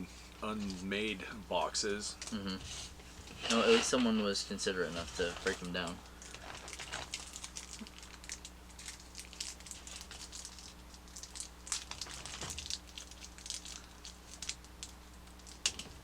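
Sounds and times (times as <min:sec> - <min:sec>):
steady low hum: 0:00.0 - 0:16.0
packaging crinkling and rustling: 0:03.4 - 0:16.0.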